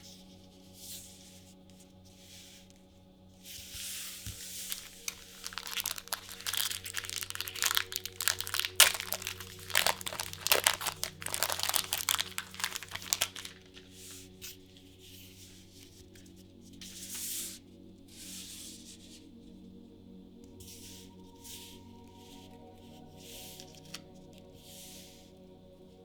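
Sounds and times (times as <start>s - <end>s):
foil wrapper crinkling and tearing: 4.7s - 13.9s.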